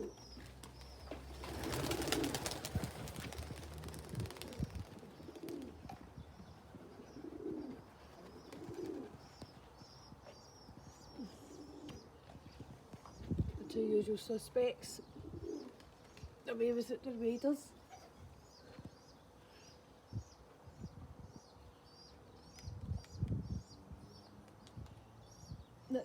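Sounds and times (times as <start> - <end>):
pigeons cooing: 0.0 - 12.2, 15.0 - 16.0.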